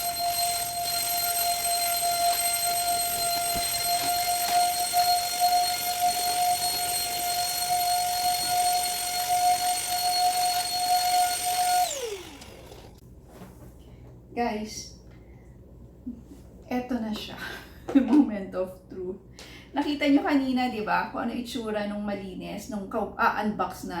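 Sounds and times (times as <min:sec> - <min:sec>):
handheld vacuum cleaner running: 0:00.0 - 0:13.0.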